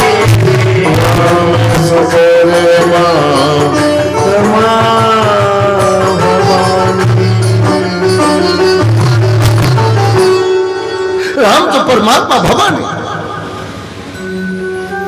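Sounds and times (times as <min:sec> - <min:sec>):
tabla drumming: 0:00.0 - 0:15.0
instrument with gliding held notes: 0:12.8 - 0:15.0.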